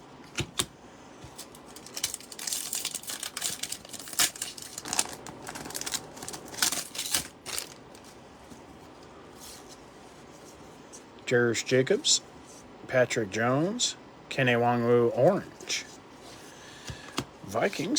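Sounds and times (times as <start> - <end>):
foil wrapper crinkling and tearing: 1.4 - 8.1.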